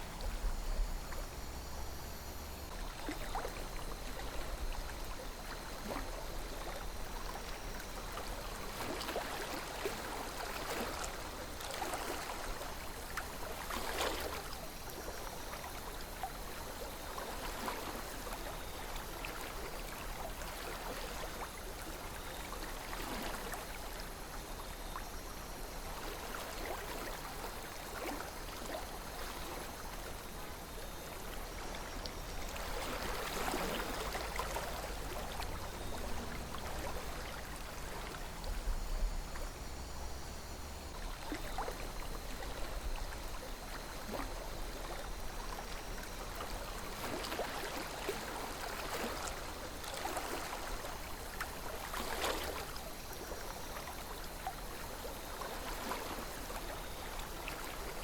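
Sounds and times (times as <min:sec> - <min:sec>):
river water flowing: 0:00.0 - 0:58.0
water gurgling and splashing: 0:30.9 - 0:38.9.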